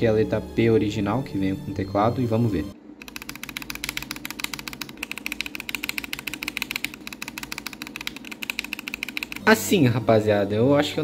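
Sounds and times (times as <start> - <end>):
fast mechanical keyboard typing: 3.0 - 9.6.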